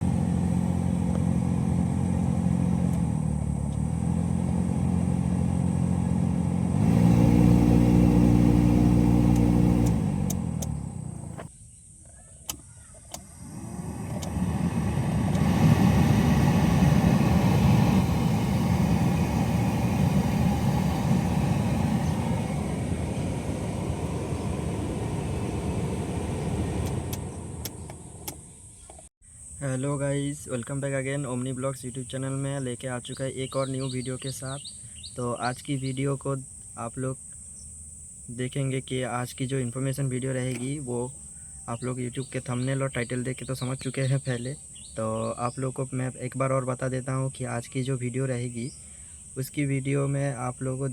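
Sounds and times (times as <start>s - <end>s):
car blower motor running: 0.0s - 11.5s, 13.1s - 29.1s
switch clicks: 9.3s - 11.5s.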